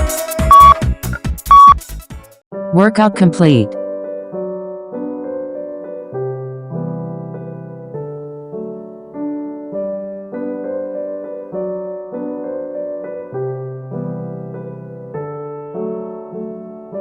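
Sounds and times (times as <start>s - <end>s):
soft piano chords: 3.9s - 17.0s.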